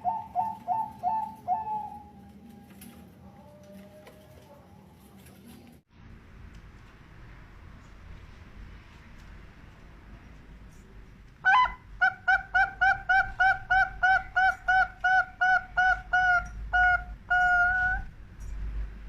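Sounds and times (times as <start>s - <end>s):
dove cooing: 0.0s - 5.8s, 11.4s - 18.2s.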